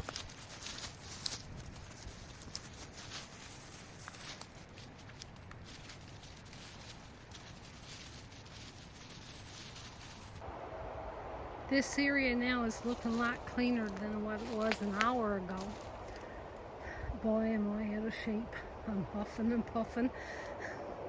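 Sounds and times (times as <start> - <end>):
footsteps in brush: 0.0 - 10.4, 12.7 - 16.7
dry twigs and leaves crackling: 0.0 - 10.5, 12.0 - 17.0
steady outdoor hiss: 0.0 - 21.0.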